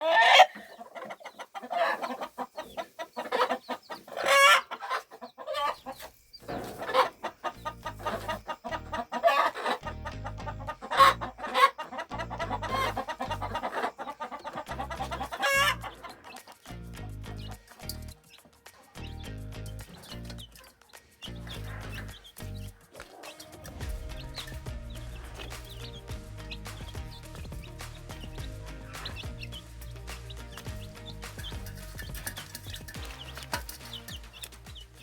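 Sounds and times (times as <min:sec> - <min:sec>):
chickens clucking: 0:00.0 - 0:35.0
music with pulsing bass: 0:16.7 - 0:18.2, 0:19.0 - 0:20.6, 0:21.3 - 0:22.9, 0:23.6 - 0:35.0.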